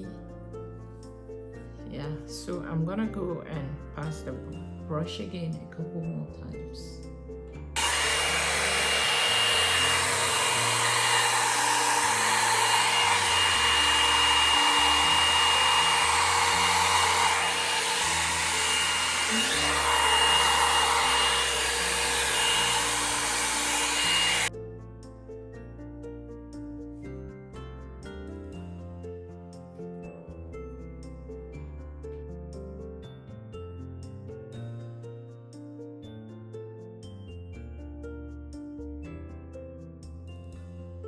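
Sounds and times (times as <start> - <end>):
hot air brush blowing with whine: 7.8 - 24.5.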